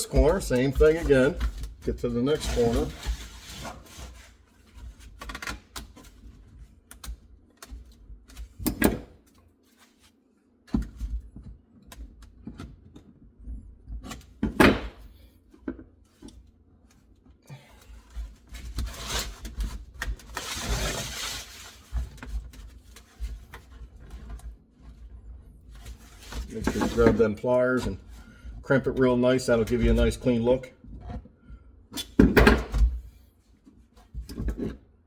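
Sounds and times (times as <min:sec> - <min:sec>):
sheet metal rasping and crinkling: 0:00.0 - 0:05.0, 0:18.0 - 0:28.0.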